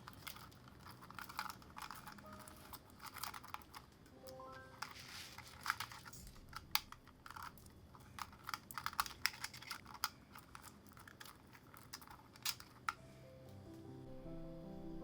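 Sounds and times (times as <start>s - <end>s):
plastic and metal parts clicking: 0.0s - 4.1s, 4.8s - 13.0s.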